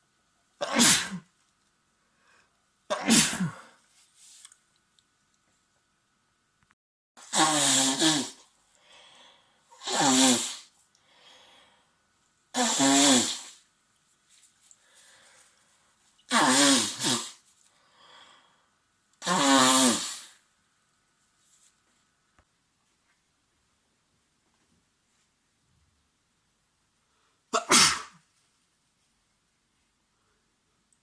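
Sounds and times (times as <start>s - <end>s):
man sneezing: 0.6s - 1.3s, 2.9s - 3.8s, 9.8s - 10.7s, 16.3s - 17.4s, 27.6s - 28.2s
quiet breaths: 2.0s - 2.7s, 8.7s - 9.8s, 10.8s - 12.1s, 14.3s - 16.1s, 17.5s - 19.0s.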